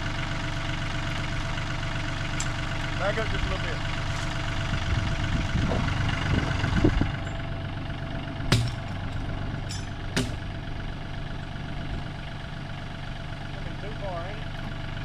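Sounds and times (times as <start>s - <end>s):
tractor engine running: 0.0s - 15.0s
sharp knocks: 8.5s - 9.0s, 9.7s - 10.5s.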